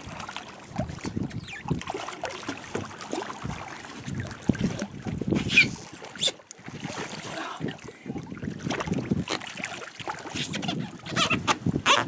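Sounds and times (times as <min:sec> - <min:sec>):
wind buffeting microphone: 0:00.7 - 0:02.1, 0:03.4 - 0:12.0.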